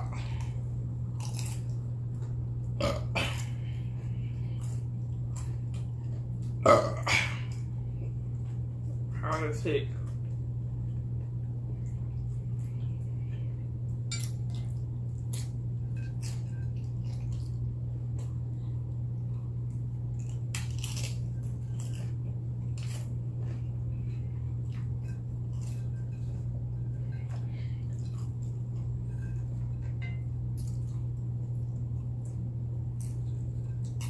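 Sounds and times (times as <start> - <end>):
crunching chips: 0.0 - 3.8, 19.3 - 34.0
low hum: 0.0 - 34.0.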